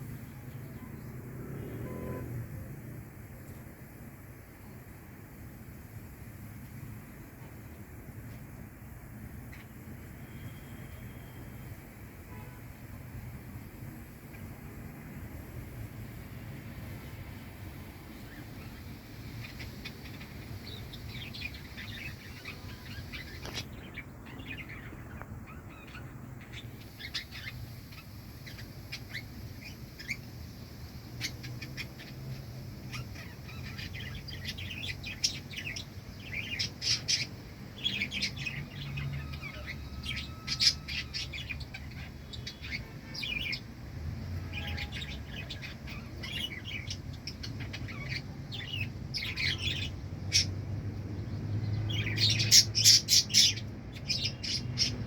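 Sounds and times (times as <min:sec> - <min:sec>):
small birds chirping: 0:00.0 - 0:02.3, 0:06.8 - 0:55.0.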